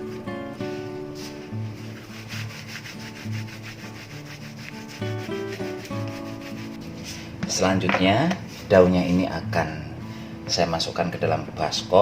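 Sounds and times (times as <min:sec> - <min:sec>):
hands rubbing leaves: 0:00.0 - 0:08.8.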